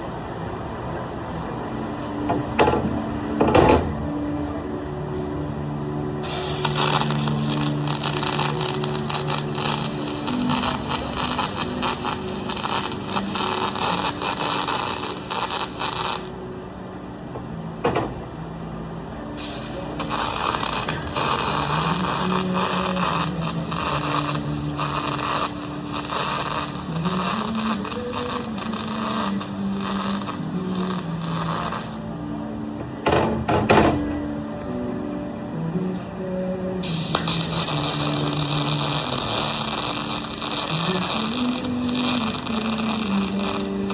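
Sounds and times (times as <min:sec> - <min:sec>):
low hum: 0:00.0 - 0:43.8
welding arc crackling and hissing: 0:06.2 - 0:16.4, 0:19.4 - 0:32.0, 0:36.8 - 0:43.9.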